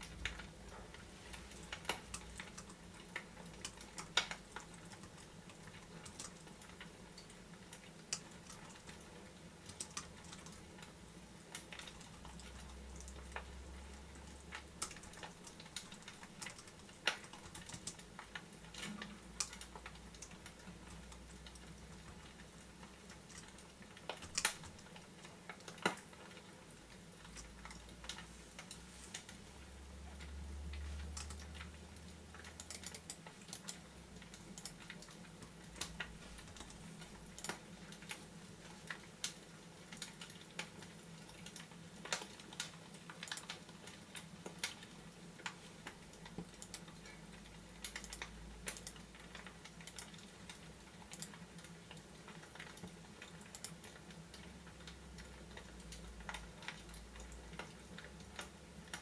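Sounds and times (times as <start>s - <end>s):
faint steady hum: 0.0s - 59.0s.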